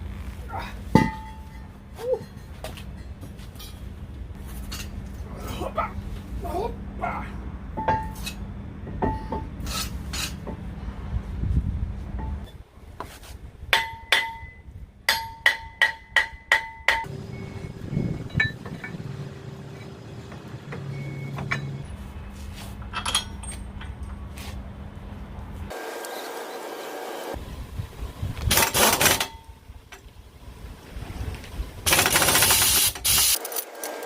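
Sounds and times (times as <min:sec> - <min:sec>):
metal parts clinking: 0:22.8 - 0:24.2, 0:31.9 - 0:33.8.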